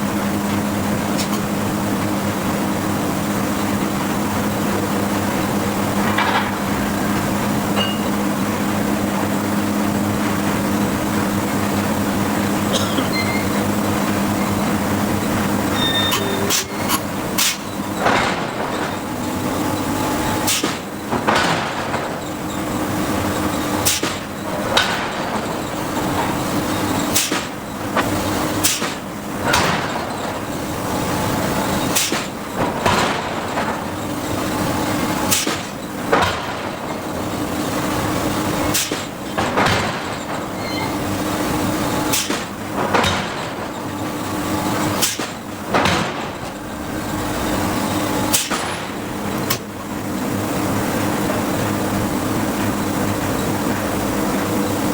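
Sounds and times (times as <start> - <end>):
steady machine hum: 0.0 - 54.9
forging hammer striking steel: 7.8 - 8.1, 15.7 - 18.8.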